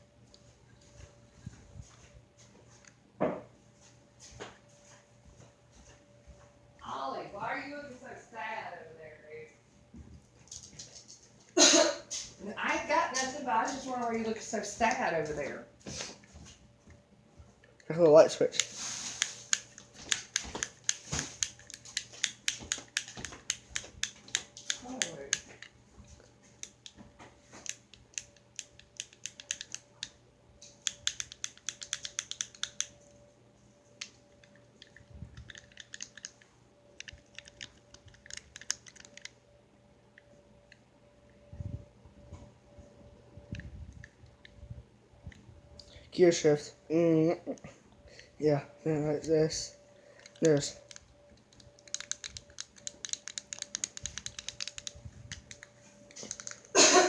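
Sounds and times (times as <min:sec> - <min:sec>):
fidget cube clicking: 0:18.6 - 0:25.4, 0:27.6 - 0:30.2, 0:30.8 - 0:33.0, 0:34.4 - 0:36.4, 0:37.0 - 0:39.4, 0:51.6 - 0:56.7.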